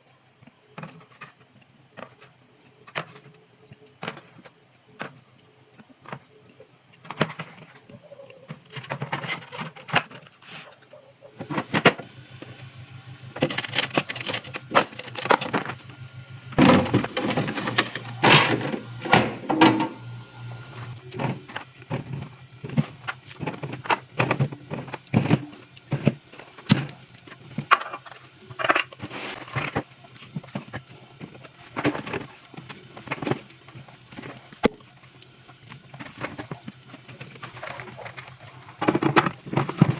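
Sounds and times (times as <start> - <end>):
containers clicking and knocking: 35.7 - 39.9.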